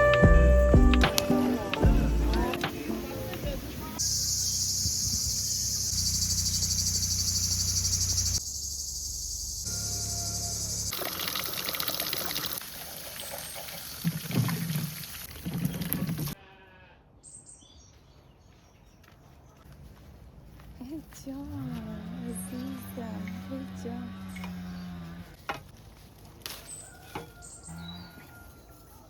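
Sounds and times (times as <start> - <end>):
high insect chorus: 2.7 - 11.4
animal bleating: 9.7 - 10.6, 16.4 - 17.1.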